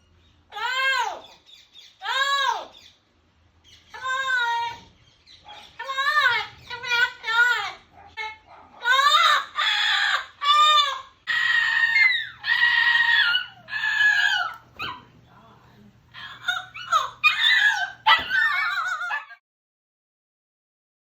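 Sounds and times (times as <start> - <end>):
parrot squawking and whooping: 3.7 - 15.2, 16.1 - 19.4.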